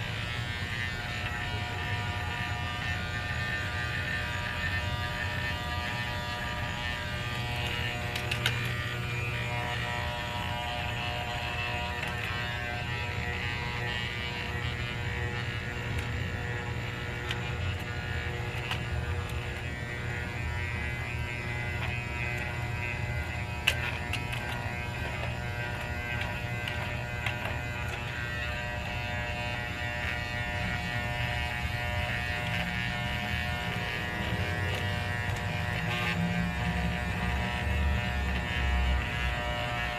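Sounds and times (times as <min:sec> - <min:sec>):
electric hair clippers buzzing: 0:00.0 - 0:39.9.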